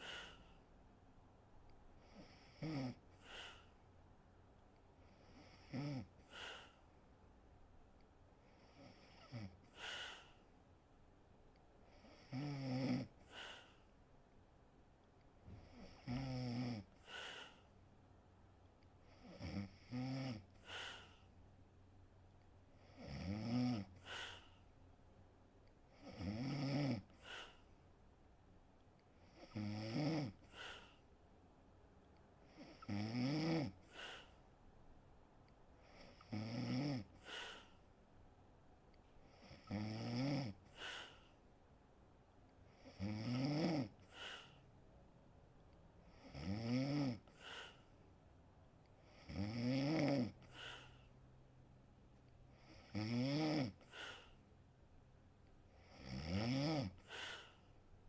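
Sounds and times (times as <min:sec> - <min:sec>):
woman snoring: 0:02.0 - 0:03.6, 0:05.1 - 0:06.7, 0:08.6 - 0:10.3, 0:11.9 - 0:13.8, 0:15.6 - 0:17.6, 0:19.1 - 0:21.2, 0:22.8 - 0:24.4, 0:25.9 - 0:27.6, 0:29.2 - 0:31.0, 0:32.5 - 0:34.3, 0:35.8 - 0:37.8, 0:39.3 - 0:41.3, 0:42.7 - 0:44.6, 0:46.1 - 0:47.8, 0:49.0 - 0:51.0, 0:52.6 - 0:54.4, 0:55.8 - 0:57.6.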